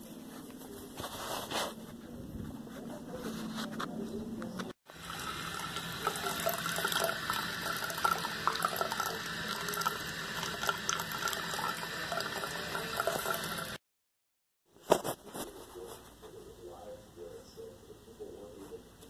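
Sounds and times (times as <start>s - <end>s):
water trickling: 4.9s - 13.8s.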